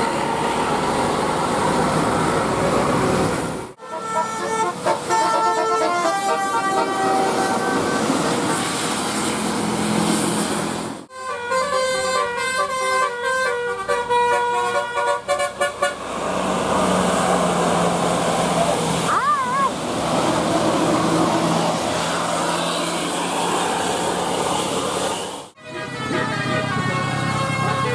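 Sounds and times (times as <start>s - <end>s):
street noise with low hum: 0.0s - 27.9s
multi-tone bus horn melody: 3.8s - 8.8s, 11.1s - 16.4s, 20.7s - 27.9s.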